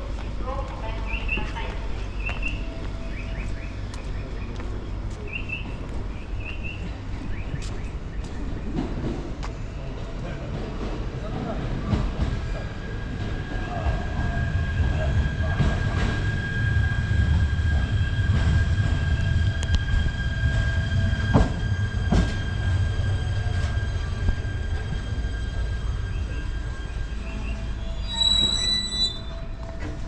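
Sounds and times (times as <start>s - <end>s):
train rumble: 0.0s - 30.0s
high-pitched wheel squeal: 13.5s - 29.9s.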